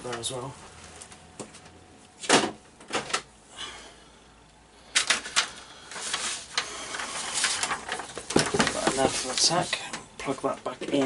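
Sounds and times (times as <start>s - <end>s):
rustling clatter: 5.0s - 11.0s.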